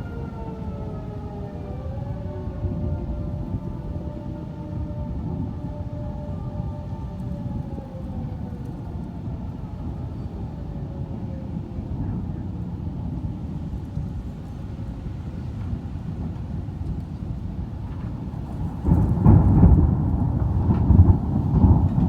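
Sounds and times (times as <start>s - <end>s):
tornado warning siren: 0.0s - 22.0s
wind: 0.0s - 22.0s
distant thunder: 17.8s - 22.0s.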